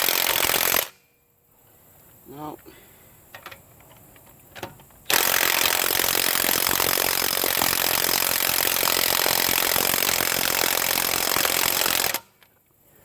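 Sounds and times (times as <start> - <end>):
impact wrench hammering: 5.1 - 12.2.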